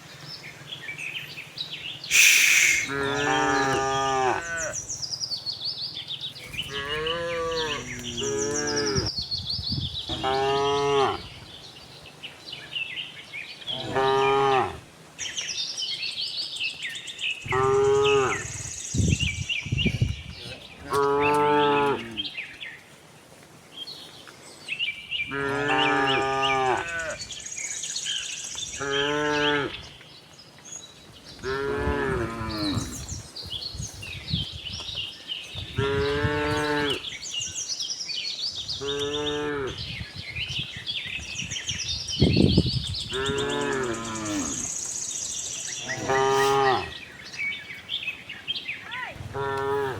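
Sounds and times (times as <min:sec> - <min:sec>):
birds chirping: 0:00.0 - 0:22.9, 0:23.7 - 0:49.9
cows mooing: 0:02.1 - 0:04.8, 0:06.5 - 0:09.1, 0:13.7 - 0:14.8, 0:20.8 - 0:22.3, 0:25.3 - 0:27.2, 0:31.4 - 0:33.0, 0:43.1 - 0:44.7, 0:45.8 - 0:47.0, 0:49.3 - 0:49.9.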